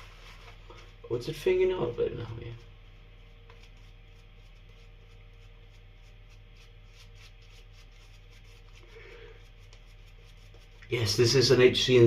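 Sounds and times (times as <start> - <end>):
steady low hum: 0.0 - 12.0
razor scraping stubble: 3.4 - 11.5.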